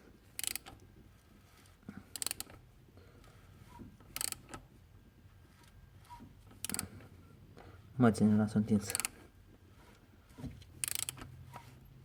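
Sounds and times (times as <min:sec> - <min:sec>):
metallic ratchet-like clicking: 0:00.4 - 0:00.7, 0:02.2 - 0:02.5, 0:04.2 - 0:04.5, 0:06.6 - 0:06.9, 0:08.9 - 0:09.1, 0:10.8 - 0:11.2.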